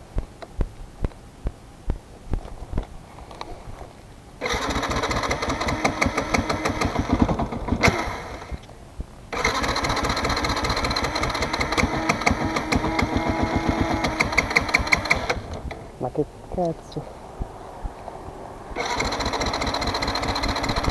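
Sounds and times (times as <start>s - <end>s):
motorcycle engine starting and running: 4.4s - 8.7s, 9.3s - 16.0s, 17.4s - 20.9s.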